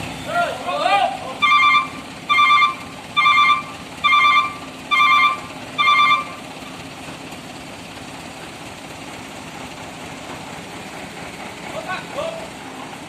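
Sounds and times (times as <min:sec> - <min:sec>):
diesel engine idling: 0:00.0 - 0:13.0
vehicle reversing alarm beeps: 0:01.3 - 0:06.6.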